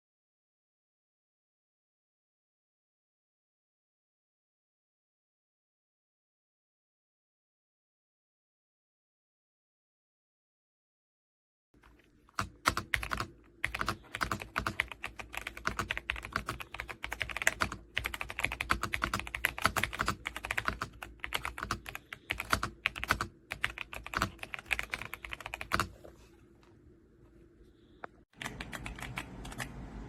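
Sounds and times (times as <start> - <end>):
mechanical keyboard typing: 12.3 - 25.9, 28.4 - 29.8.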